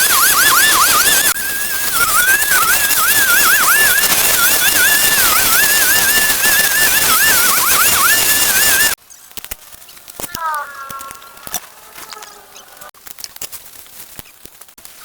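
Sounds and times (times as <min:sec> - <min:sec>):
high whistled melody: 0:00.0 - 0:09.0.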